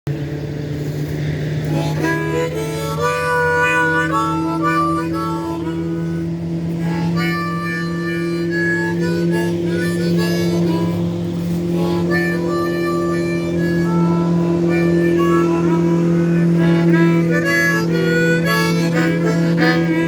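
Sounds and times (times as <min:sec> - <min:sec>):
steady low hum: 0:00.1 - 0:20.0
bluesy harmonica: 0:00.4 - 0:20.0.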